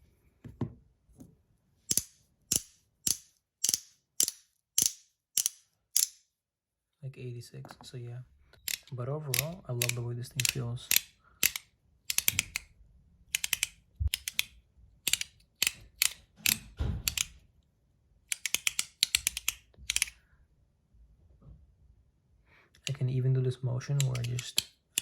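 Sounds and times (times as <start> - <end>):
sharp metallic clicks: 1.9 - 6.2, 8.6 - 12.7, 13.3 - 17.4, 18.3 - 20.2, 24.0 - 25.0.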